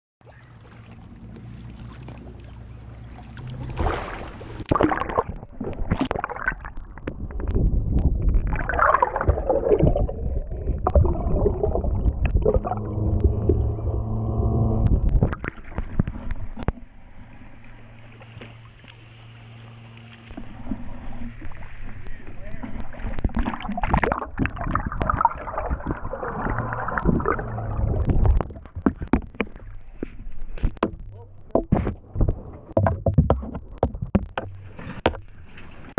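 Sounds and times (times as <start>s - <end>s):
boat engine droning: 0.2s - 4.7s, 9.1s - 35.9s
loud splashing: 3.1s - 6.6s
knocks and rattling: 30.6s - 35.3s.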